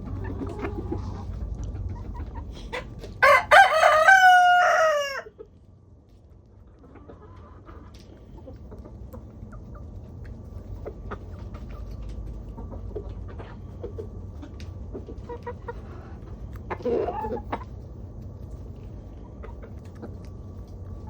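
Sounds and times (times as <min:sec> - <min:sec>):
chickens clucking softly: 0:00.0 - 0:21.0
rooster crowing: 0:03.2 - 0:05.4.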